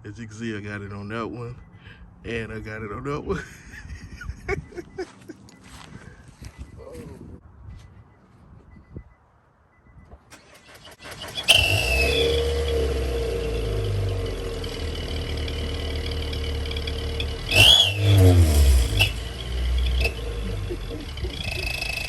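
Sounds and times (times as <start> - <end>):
car engine starting and idling: 9.8 - 22.0
exhaust whistle: 11.1 - 22.0.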